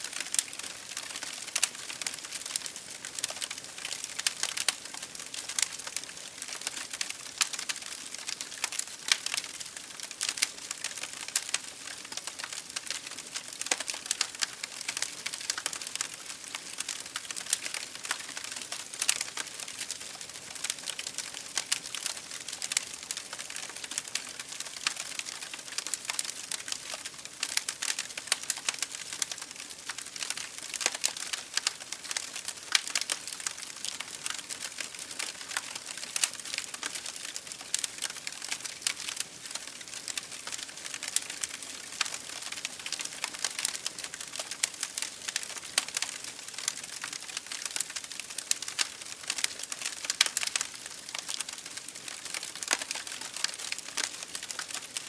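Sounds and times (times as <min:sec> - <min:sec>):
fire crackling and popping: 0:00.0 - 0:55.0
steady hiss of fire: 0:00.0 - 0:55.0.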